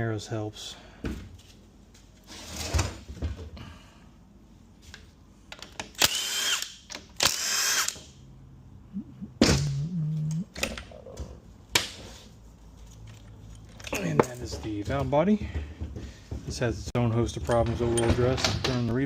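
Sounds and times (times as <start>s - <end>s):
cordless drill bursts: 6.0s - 8.0s.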